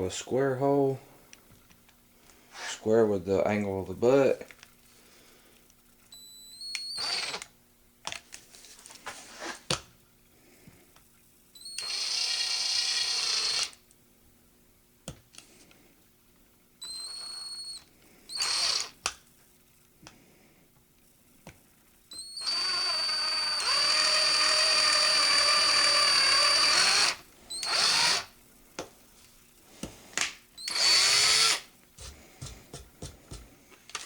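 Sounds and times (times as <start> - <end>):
power drill boring into wood: 6.2 - 7.4, 11.6 - 13.8, 16.8 - 19.0, 22.1 - 28.3, 30.6 - 31.7.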